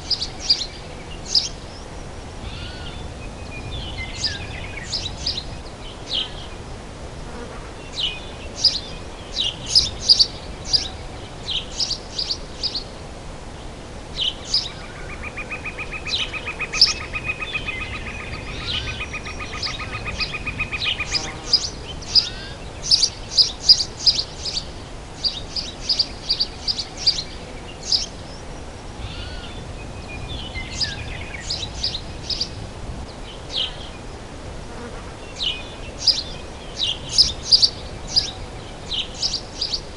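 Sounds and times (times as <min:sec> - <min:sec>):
forest birds chirping: 0:00.0 - 0:34.4, 0:35.1 - 0:39.9
steady background hiss: 0:00.0 - 0:39.9.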